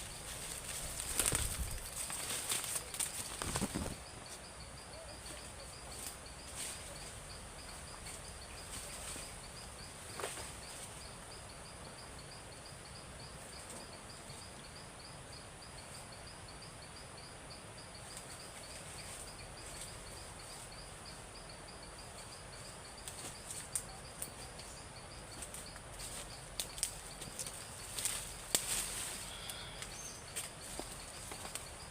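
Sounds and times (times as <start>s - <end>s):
insects chirping: 0.0s - 31.9s
faint snaps and ticks: 26.6s - 28.8s.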